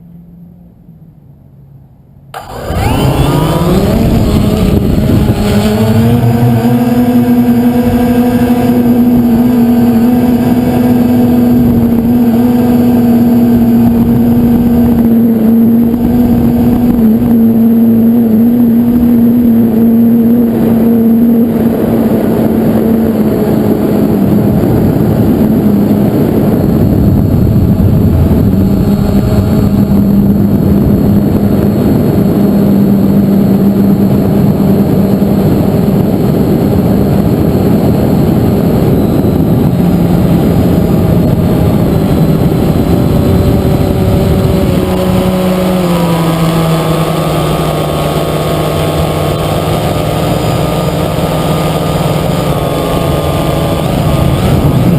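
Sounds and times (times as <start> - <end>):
drone motors humming: 0.0 - 54.9
rushing air: 2.3 - 15.1, 20.3 - 54.9.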